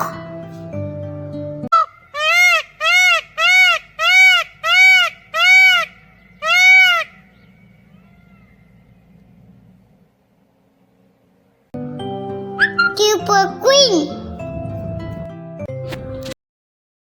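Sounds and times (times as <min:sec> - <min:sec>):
peacock calling: 0:01.7 - 0:09.6.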